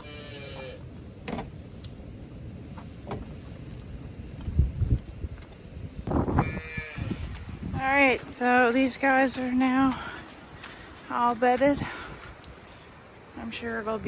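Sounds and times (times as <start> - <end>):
goat bleats: 6.4 - 7.2.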